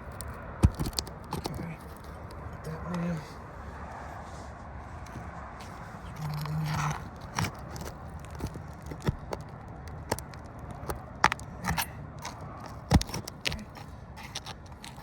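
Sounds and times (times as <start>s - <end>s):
roof tool scraping and clicking: 0.0s - 3.0s, 5.0s - 15.0s.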